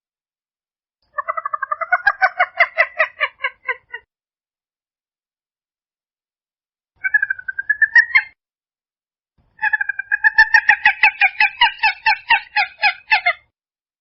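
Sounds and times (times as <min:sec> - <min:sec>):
bird calling: 0:07.0 - 0:08.4, 0:09.6 - 0:13.4.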